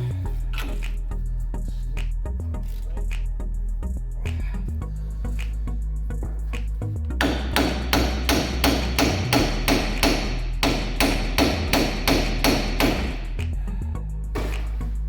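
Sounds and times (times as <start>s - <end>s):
hammer striking metal: 7.2s - 13.3s.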